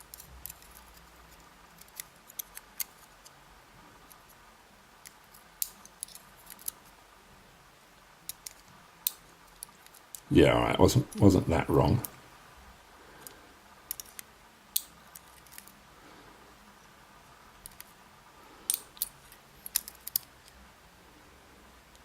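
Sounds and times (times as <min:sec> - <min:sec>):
small metal pins clicking: 0:00.0 - 0:03.3, 0:18.7 - 0:20.3.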